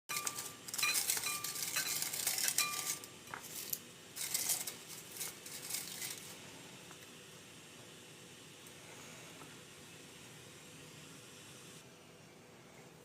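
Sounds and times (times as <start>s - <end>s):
spoon clinking against cup: 0.1s - 3.1s.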